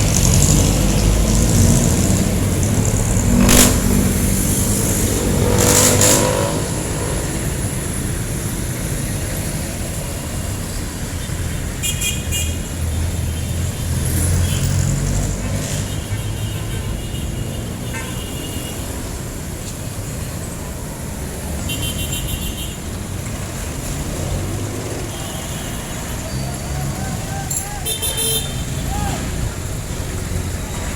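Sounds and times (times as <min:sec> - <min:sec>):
engine revving: 0:00.0 - 0:07.8
vehicle engines rumbling: 0:00.0 - 0:30.9.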